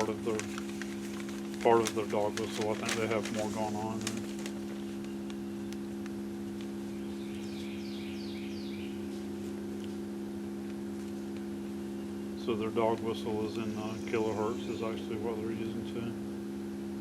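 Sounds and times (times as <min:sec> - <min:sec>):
steady electronic hum: 0:00.0 - 0:17.0
bird chirping: 0:06.9 - 0:09.1.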